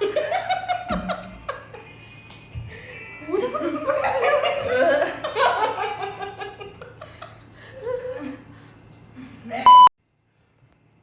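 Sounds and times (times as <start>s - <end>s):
loud electronic beep: 9.7s - 9.9s.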